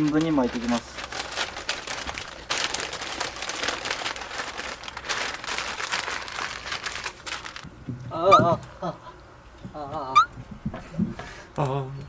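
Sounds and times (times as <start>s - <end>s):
newspaper crinkling and rustling: 0.0s - 7.7s.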